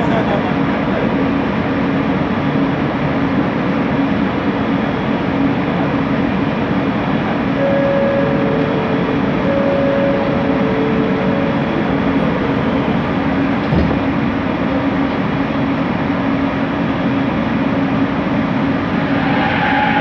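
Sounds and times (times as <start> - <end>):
train rumble and motor hum: 0.0 - 20.0
high steady motor tones: 7.0 - 13.7.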